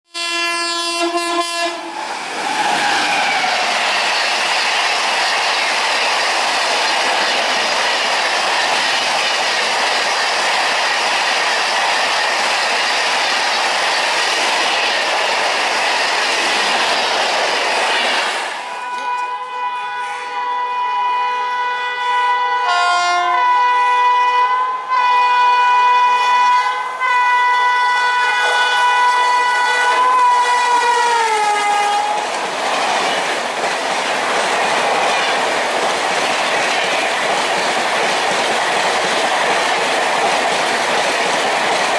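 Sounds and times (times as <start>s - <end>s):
train horn: 0.1s - 1.9s, 18.6s - 32.3s
train wheels rushing on rails: 0.2s - 41.9s.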